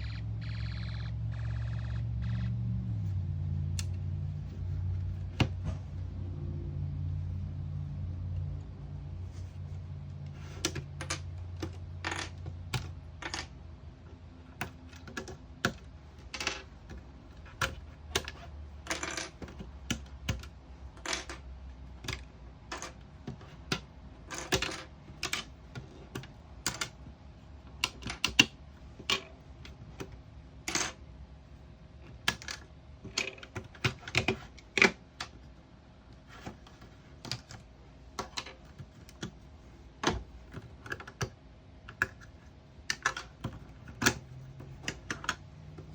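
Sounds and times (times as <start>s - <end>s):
machine-gun sound effect: 0.0s - 2.6s
faint steady hum: 0.0s - 45.9s.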